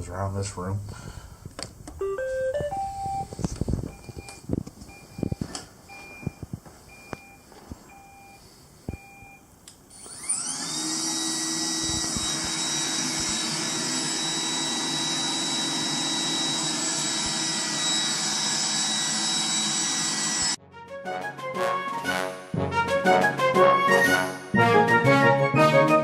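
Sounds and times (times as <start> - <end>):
robot vacuum motor whining: 9.9 - 20.6.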